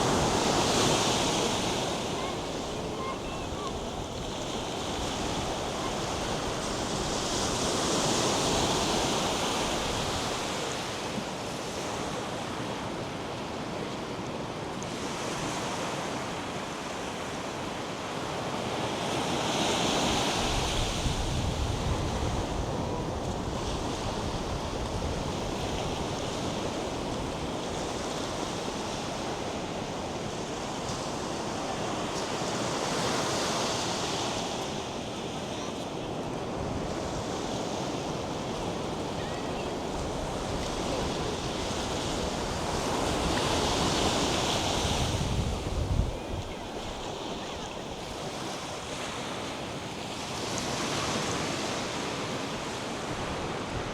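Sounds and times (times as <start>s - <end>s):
surf washing onto sandy beach: 0.0s - 53.9s
wind on microphone: 20.0s - 28.7s, 36.5s - 49.1s.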